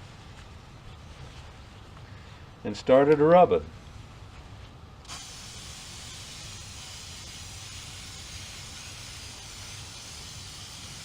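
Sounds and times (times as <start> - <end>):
aerosol can spraying: 5.1 - 11.0.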